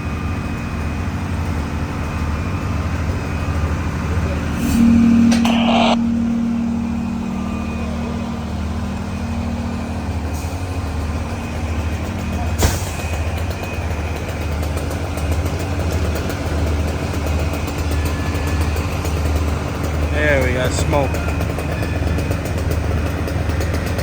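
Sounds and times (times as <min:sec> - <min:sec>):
sharp knock: 0:04.8 - 0:06.6.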